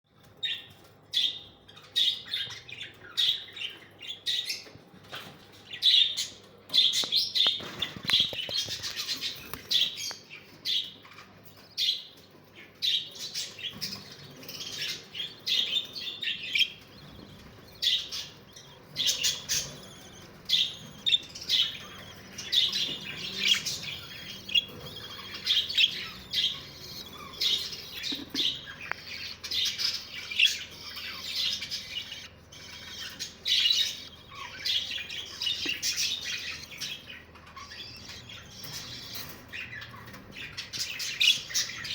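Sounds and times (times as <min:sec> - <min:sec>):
small birds chirping: 0:00.1 - 0:41.9
harsh bird squawks: 0:16.6 - 0:35.4.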